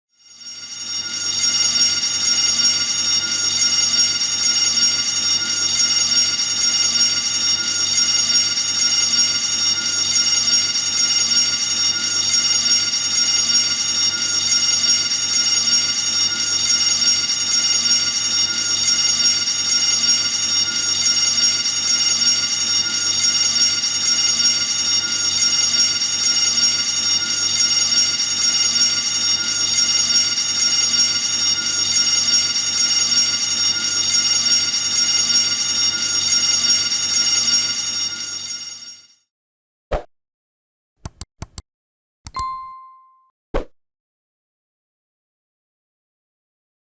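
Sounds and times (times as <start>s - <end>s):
fire alarm ringing: 0.2s - 39.1s.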